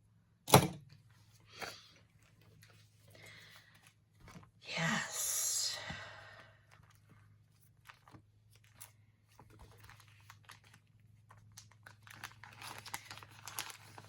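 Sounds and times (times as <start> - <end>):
low steady hum: 0.5 - 13.7
paper sticker sheets crinkling: 7.8 - 14.0.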